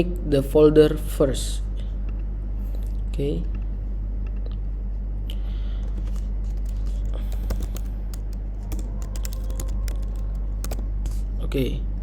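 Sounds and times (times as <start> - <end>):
low electrical hum: 0.0 - 12.0
keyboard keys clicking: 5.8 - 11.2.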